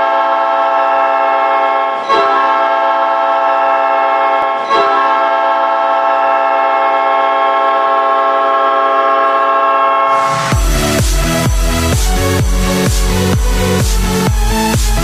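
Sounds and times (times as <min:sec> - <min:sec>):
multi-tone goal horn blasts: 0:00.0 - 0:14.9.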